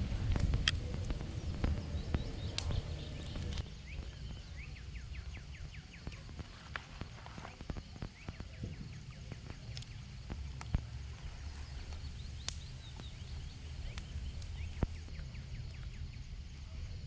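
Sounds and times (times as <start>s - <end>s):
sharp clicks and crackles: 0.0s - 5.3s, 5.9s - 16.0s
low rumble: 0.0s - 5.8s
bird chirping: 0.0s - 6.7s, 11.2s - 17.0s.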